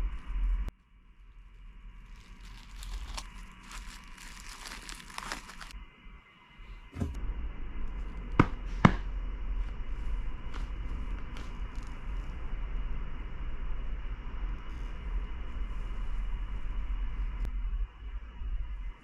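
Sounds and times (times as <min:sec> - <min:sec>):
packaging crinkling and rustling: 0:01.8 - 0:05.8.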